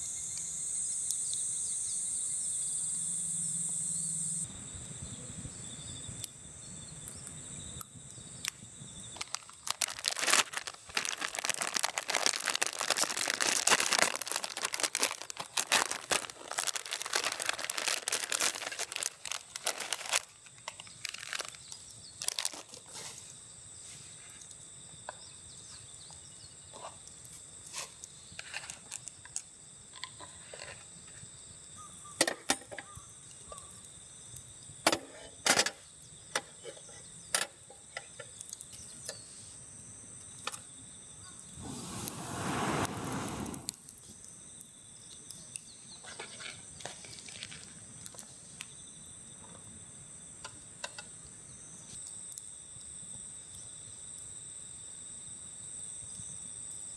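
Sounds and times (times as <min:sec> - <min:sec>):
insects singing: 0:00.0 - 0:22.6
rushing noise: 0:41.6 - 0:43.8.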